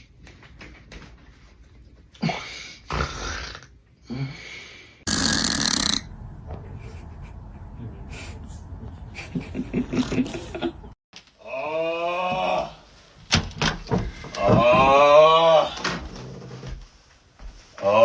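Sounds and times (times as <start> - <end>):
person snoring: 5.1 - 6.0.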